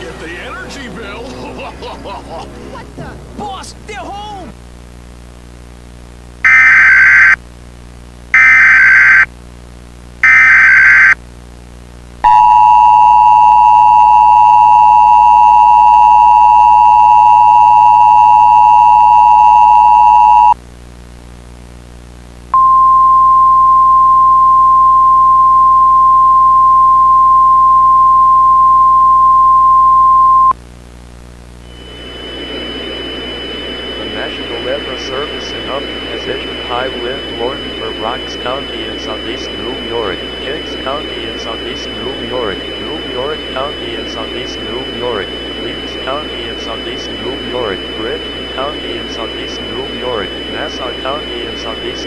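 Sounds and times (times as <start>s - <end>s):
buzzy digital header bursts: 6.5s - 7.4s, 8.4s - 9.3s, 10.2s - 11.2s, 31.8s - 52.0s
steady radio alert tone: 6.5s - 7.4s, 8.4s - 9.3s, 10.2s - 11.2s, 31.7s - 52.0s
two-tone attention signal: 8.4s - 9.3s, 10.2s - 11.2s.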